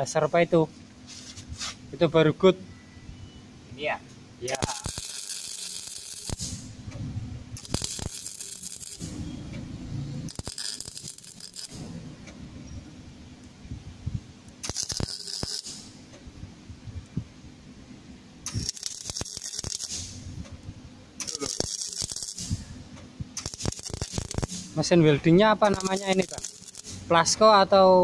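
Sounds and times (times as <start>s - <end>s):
welding torch hiss: 4.4s - 6.8s, 7.6s - 9.2s, 10.3s - 11.9s, 14.6s - 16.0s, 18.4s - 20.3s, 21.2s - 22.7s, 23.3s - 27.4s
crackling rattle: 4.5s - 6.7s, 7.6s - 9.2s, 10.3s - 12.0s, 14.6s - 15.9s, 18.4s - 20.2s, 21.2s - 22.6s, 23.4s - 24.9s, 25.6s - 27.1s.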